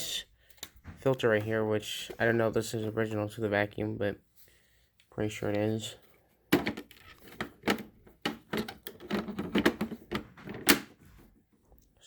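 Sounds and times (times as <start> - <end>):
plastic clicks and rattles of vacuum: 6.6 - 10.9.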